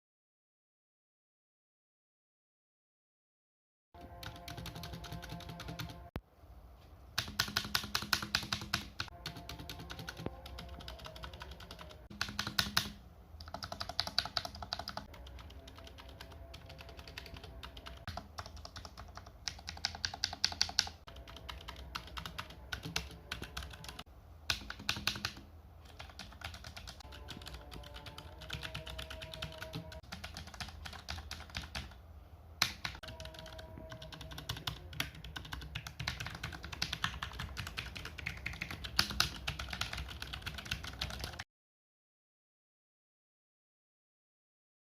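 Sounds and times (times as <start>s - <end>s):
mechanical keyboard typing: 4.0s - 6.1s, 7.2s - 32.0s, 32.6s - 41.4s
faint music: 4.0s - 41.4s.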